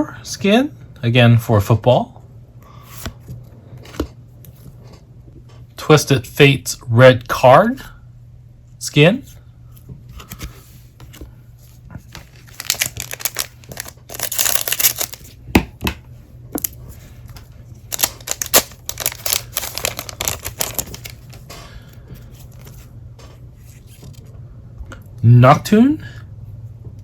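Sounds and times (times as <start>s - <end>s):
foil crinkling and rustling: 12.1s - 15.4s, 17.9s - 21.5s
foil pack tearing: 12.2s - 15.3s, 17.9s - 21.4s.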